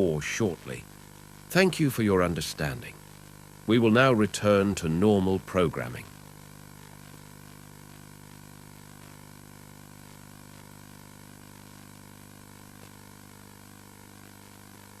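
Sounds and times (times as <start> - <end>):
electronic hum with hiss: 0.0 - 15.0.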